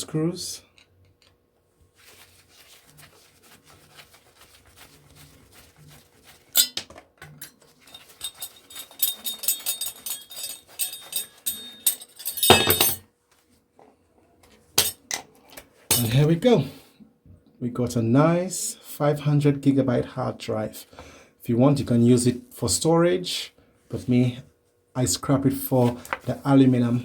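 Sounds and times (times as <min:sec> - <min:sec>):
metal parts clinking: 0:07.4 - 0:13.0, 0:15.9 - 0:16.2.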